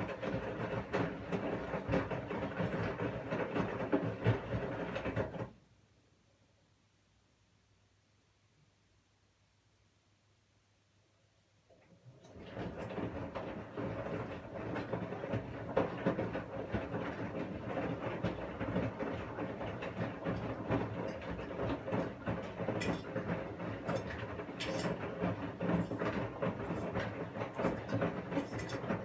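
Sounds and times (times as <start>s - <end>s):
washing machine running: 0.0s - 5.6s, 11.8s - 29.0s.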